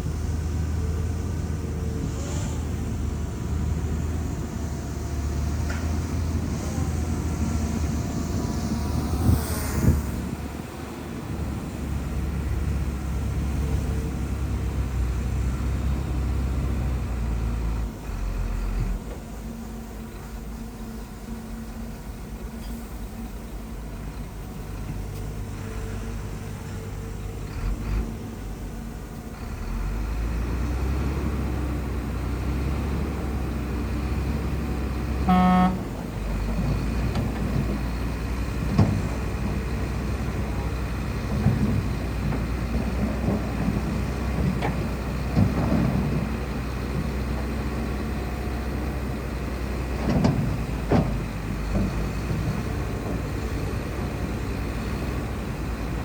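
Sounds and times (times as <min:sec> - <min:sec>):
bulldozer diesel engine running: 0:00.0 - 0:56.0
vehicle horn toot: 0:35.3 - 0:35.8.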